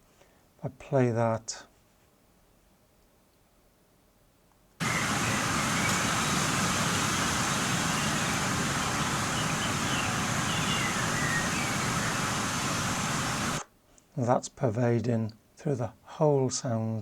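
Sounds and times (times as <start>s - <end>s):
faint bird calls: 4.8s - 13.6s
wind rushing: 4.8s - 13.6s.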